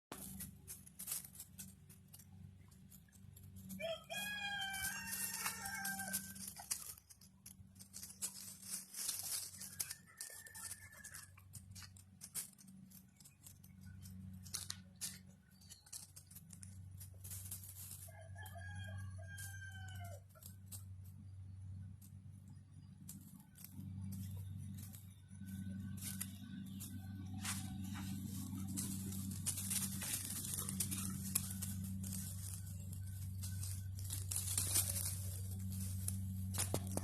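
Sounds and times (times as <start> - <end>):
clicks and rustling: 0.1 - 18.1, 22.8 - 37.0
puppies howling: 4.3 - 6.9
steady low hum: 20.2 - 37.0.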